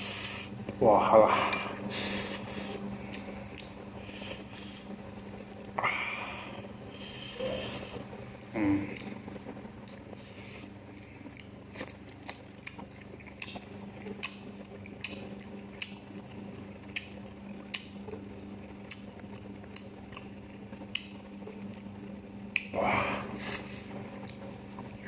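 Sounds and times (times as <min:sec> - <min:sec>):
steady low hum: 0:00.0 - 0:25.0
chewing and crunching: 0:00.6 - 0:05.8, 0:06.4 - 0:25.0
wet mouth clicks: 0:18.8 - 0:21.2.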